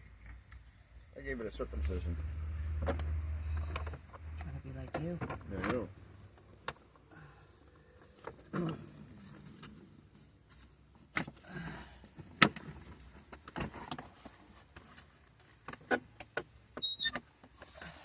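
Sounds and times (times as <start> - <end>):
brief high squeak: 16.8 - 17.2.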